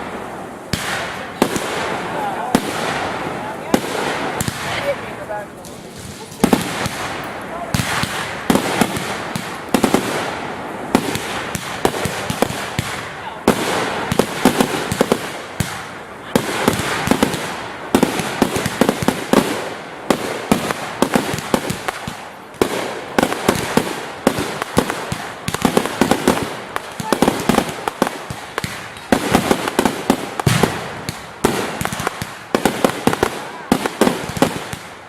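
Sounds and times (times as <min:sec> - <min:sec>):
fireworks bangs: 0:00.0 - 0:35.0
fireworks crackling: 0:00.0 - 0:35.0.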